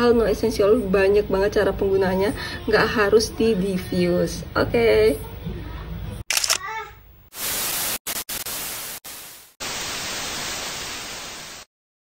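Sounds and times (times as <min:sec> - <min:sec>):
static white noise bursts: 0:07.3 - 0:11.7
steady static hiss: 0:07.3 - 0:11.7.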